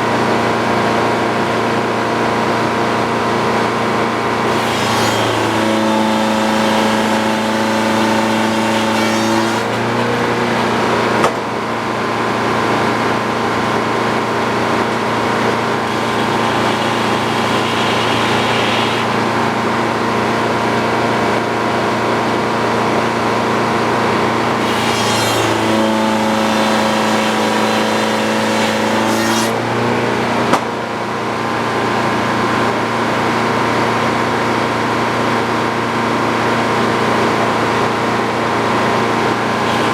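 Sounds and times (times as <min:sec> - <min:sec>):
sawmill sawing wood: 0:04.4 - 0:11.2, 0:14.0 - 0:21.3, 0:23.0 - 0:30.6, 0:38.6 - 0:39.9.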